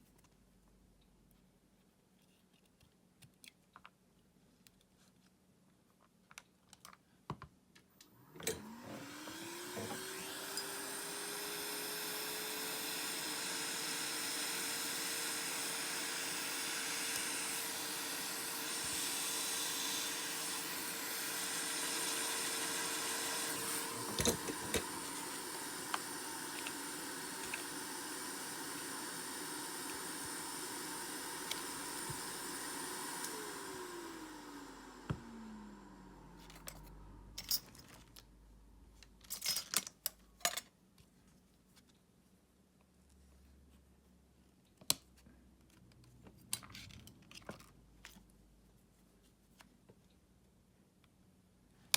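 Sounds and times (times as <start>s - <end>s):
small electric motor whining: 8.2s - 36.9s.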